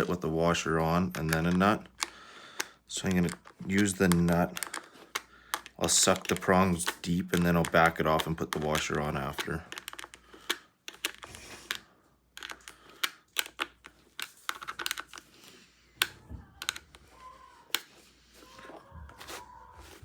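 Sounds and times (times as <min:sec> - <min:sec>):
small clicks and taps of hand tools: 0:01.1 - 0:15.3.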